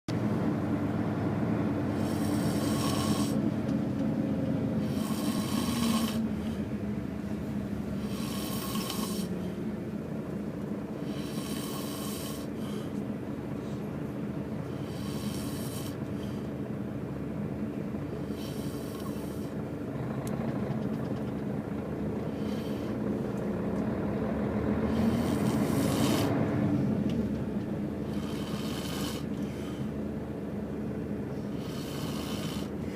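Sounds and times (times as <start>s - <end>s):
bus engine humming: 0.1s - 32.9s
man snoring: 2.0s - 3.4s, 4.8s - 6.4s, 8.0s - 9.4s, 11.0s - 12.7s, 14.8s - 16.0s, 18.2s - 19.6s, 24.8s - 26.4s, 28.0s - 29.4s, 31.5s - 32.9s.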